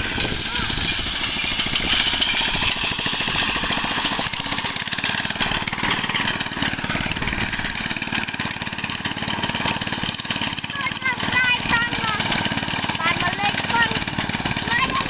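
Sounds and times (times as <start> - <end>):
engine running with fast firing beat: 0.0 - 15.0.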